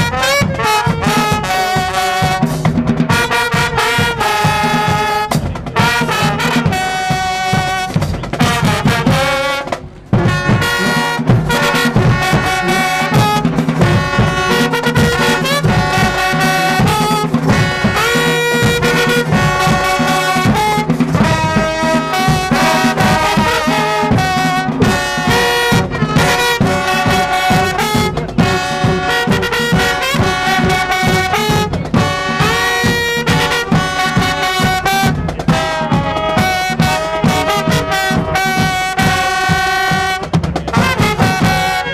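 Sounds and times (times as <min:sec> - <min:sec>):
drums: 0:00.0 - 0:41.9
marching band brass: 0:00.0 - 0:41.9.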